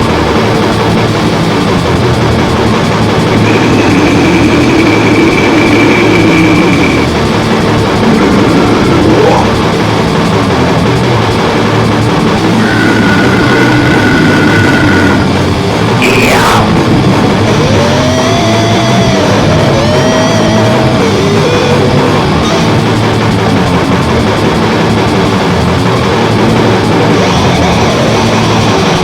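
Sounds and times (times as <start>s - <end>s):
distorted heavy metal music: 0.0s - 29.0s
sliding squealing tones: 3.1s - 10.1s, 12.2s - 23.5s.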